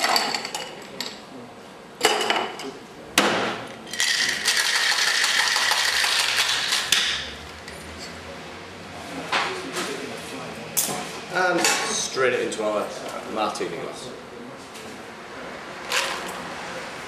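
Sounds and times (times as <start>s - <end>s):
cocktail shaker rattling: 3.9s - 6.9s.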